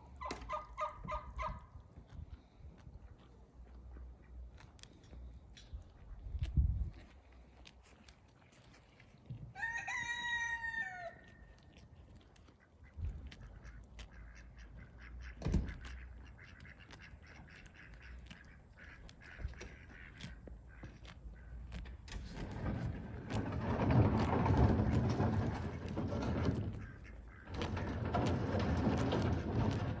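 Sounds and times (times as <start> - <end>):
fowl drawn-out call: 9.6 - 11.2.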